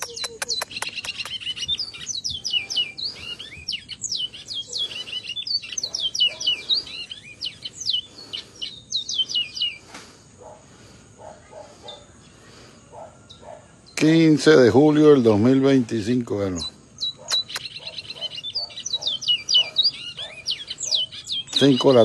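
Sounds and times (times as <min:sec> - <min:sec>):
songbird whistling song: 0:00.0 - 0:10.6, 0:16.5 - 0:22.0.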